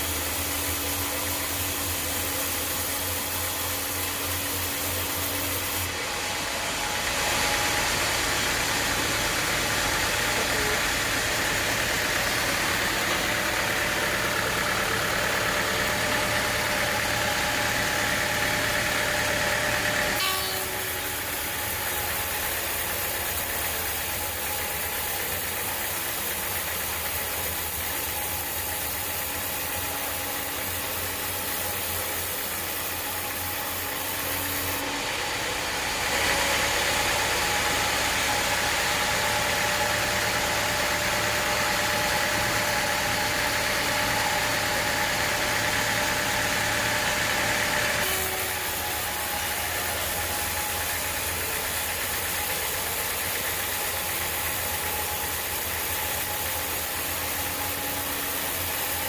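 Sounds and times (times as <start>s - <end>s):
sawmill engine running: 0.0s - 59.0s
saw blade grinding through log: 20.0s - 21.9s.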